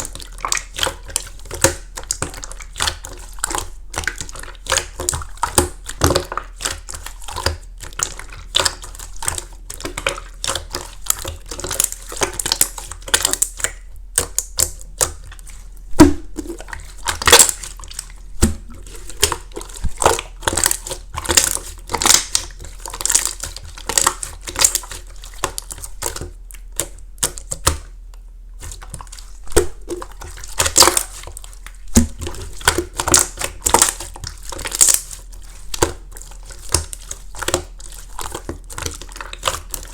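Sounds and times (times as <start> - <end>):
slime crackling by hand: 0.0 - 27.9, 28.6 - 39.9.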